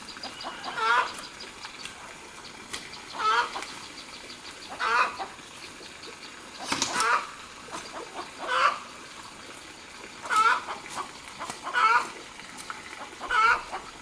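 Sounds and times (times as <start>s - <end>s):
chickens calling: 0.0s - 4.0s, 4.6s - 5.4s, 6.6s - 8.9s, 10.2s - 12.2s, 13.0s - 14.0s.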